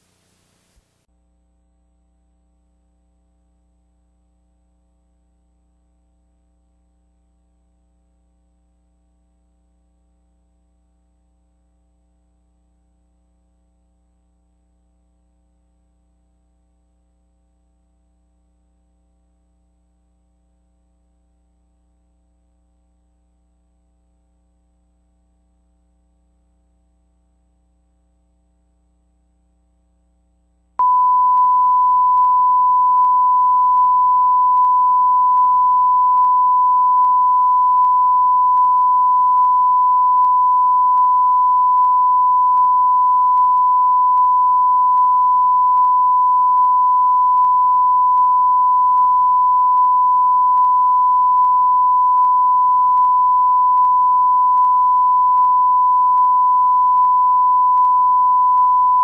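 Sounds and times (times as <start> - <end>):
steady test tone: 30.8 - 59.0.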